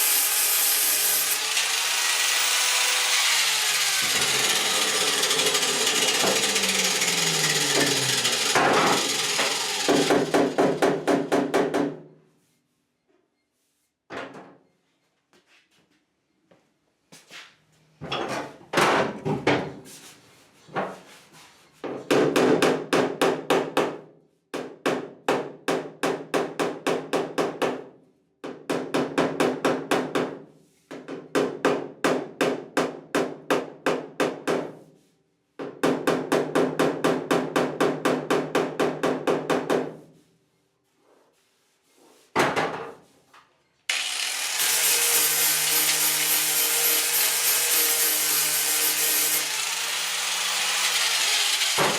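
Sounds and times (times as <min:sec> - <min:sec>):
power tool running: 0:00.0 - 0:11.3, 0:43.9 - 0:51.9.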